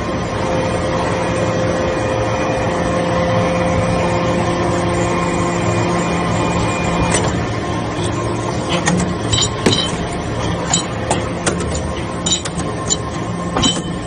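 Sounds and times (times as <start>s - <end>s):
metal chips clinking: 9.3s - 10.0s, 12.3s - 13.0s.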